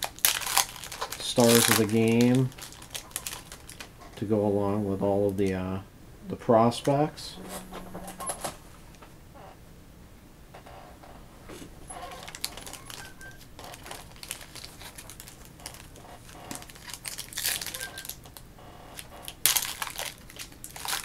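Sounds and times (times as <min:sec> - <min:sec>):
foil wrappers crinkling and tearing: 0:00.0 - 0:03.9, 0:12.1 - 0:18.4, 0:19.0 - 0:21.0.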